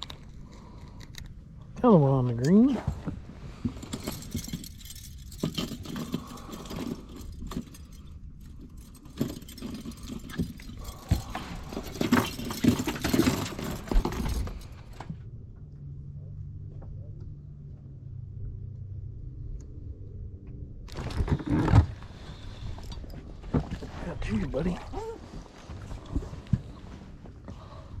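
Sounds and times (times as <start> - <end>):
low steady hum: 0.0 - 28.0
fishing tackle clicking and rattling: 3.8 - 14.8.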